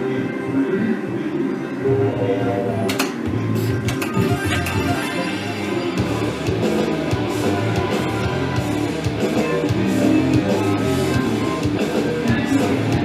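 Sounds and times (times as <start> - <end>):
strummed guitar music: 4.0 - 13.0.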